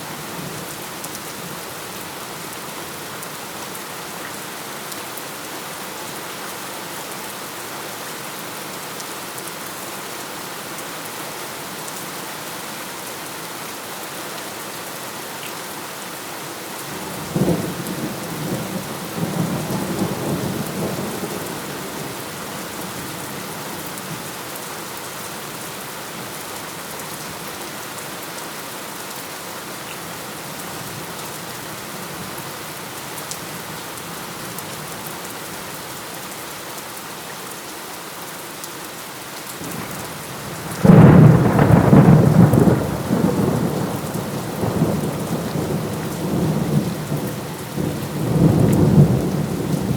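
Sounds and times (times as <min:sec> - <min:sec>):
steady rain falling: 0:00.0 - 0:49.9
thunderclap: 0:40.8 - 0:43.9.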